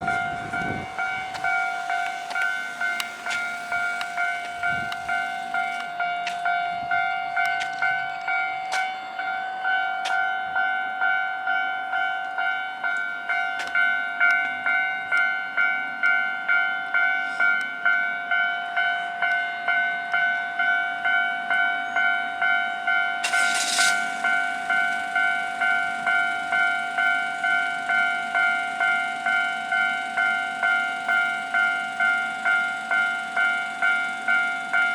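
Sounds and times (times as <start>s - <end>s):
level-crossing warning bell: 0.0s - 34.9s
short hiss: 23.2s - 24.2s.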